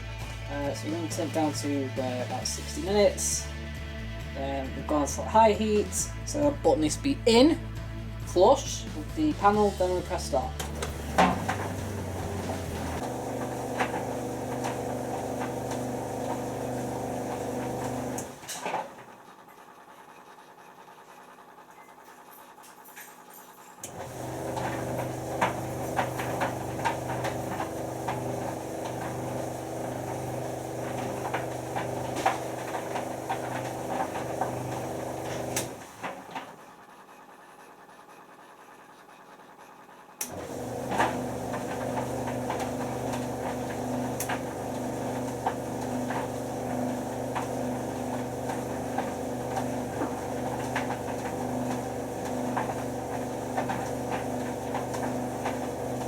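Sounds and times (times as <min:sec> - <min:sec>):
tumble dryer motor humming: 0:00.0 - 0:20.1, 0:23.8 - 0:38.9, 0:40.1 - 0:56.0
towels knocking in dryer drum: 0:10.6 - 0:18.3, 0:24.0 - 0:36.3, 0:40.3 - 0:56.0.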